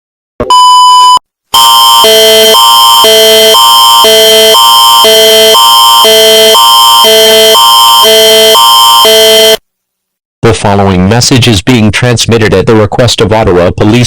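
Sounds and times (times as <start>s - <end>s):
brief beep: 0.4s - 1.2s
electronic alert alarm: 0.4s - 9.6s.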